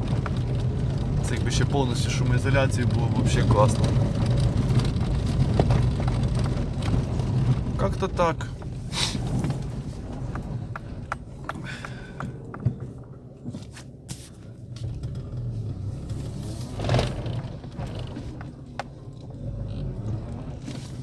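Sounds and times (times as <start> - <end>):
stones ticking on car: 0.0 - 15.0
engine and tyre rumble: 0.0 - 21.0.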